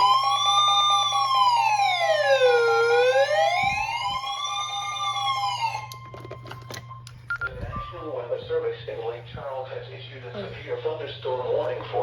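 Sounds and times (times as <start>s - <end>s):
electronic siren wailing: 0.0s - 8.2s.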